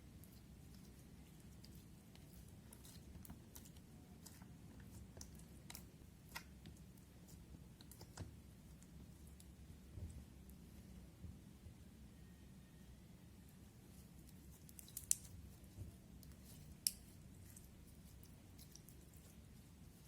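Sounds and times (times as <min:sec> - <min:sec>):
low background hum: 0:00.0 - 0:20.0
slime clicking and crackling: 0:00.2 - 0:09.5, 0:14.3 - 0:15.4, 0:16.1 - 0:19.4.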